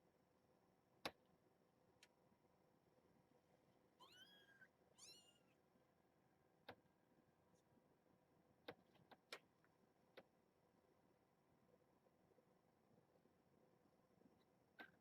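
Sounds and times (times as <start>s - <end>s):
kitten mewing: 4.0s - 5.6s.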